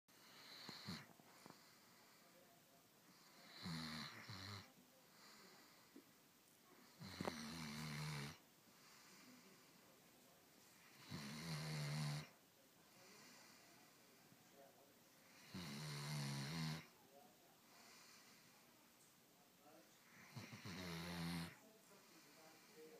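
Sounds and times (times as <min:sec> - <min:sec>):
quiet breathing: 0:00.1 - 0:22.9
dog snoring: 0:00.2 - 0:01.8, 0:03.2 - 0:05.8, 0:06.9 - 0:08.4, 0:10.9 - 0:12.4, 0:15.3 - 0:16.9, 0:20.1 - 0:21.6.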